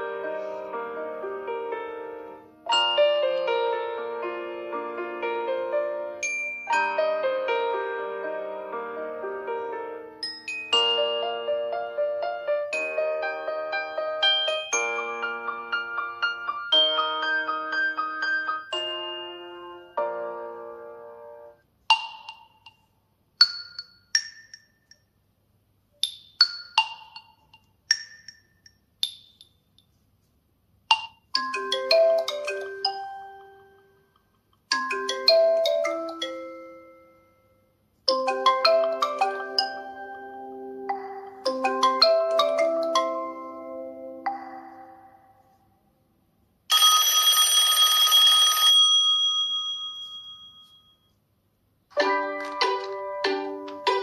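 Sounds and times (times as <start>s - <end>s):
chime-like ringtone melody: 2.7s - 4.8s, 6.2s - 8.2s, 10.2s - 20.6s, 30.9s - 34.0s, 34.7s - 45.5s, 46.7s - 51.2s, 52.0s - 54.0s
phone ringtone chime: 6.2s - 7.4s, 10.2s - 11.8s, 12.7s - 17.6s, 31.4s - 33.8s, 46.7s - 51.2s.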